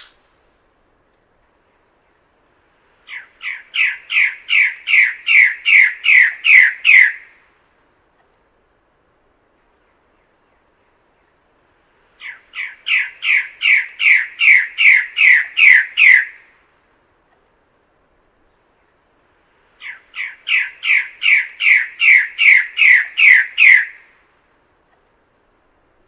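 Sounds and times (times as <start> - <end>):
bird squawking: 3.1 - 7.2, 12.2 - 16.4, 19.8 - 24.0.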